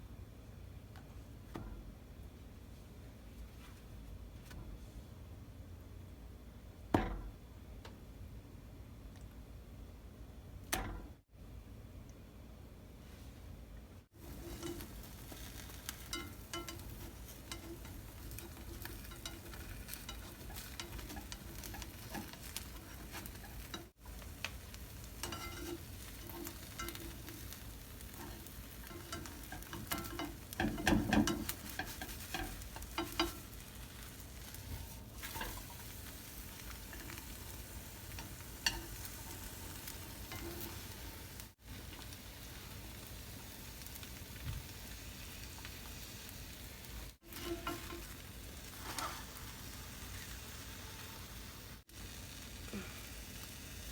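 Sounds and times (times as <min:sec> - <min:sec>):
egg sizzling in a pan: 0:14.1 - 0:53.9
utensil clatter: 0:14.2 - 0:33.7
utensil tapping and scraping: 0:14.2 - 0:37.4, 0:38.0 - 0:41.0, 0:47.3 - 0:48.2.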